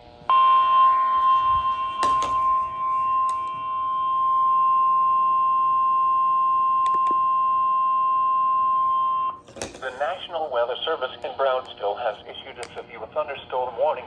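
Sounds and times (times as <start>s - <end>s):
steady high alarm tone: 0.3s - 10.3s.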